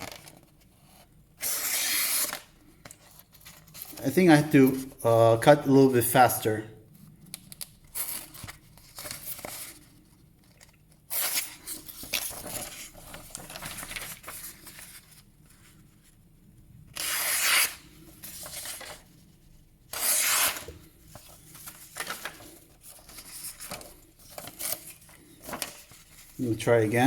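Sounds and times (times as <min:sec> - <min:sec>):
paper rustling: 0:07.6 - 0:16.2, 0:17.0 - 0:27.0
knife cutting paper: 0:17.0 - 0:18.9, 0:19.9 - 0:20.8.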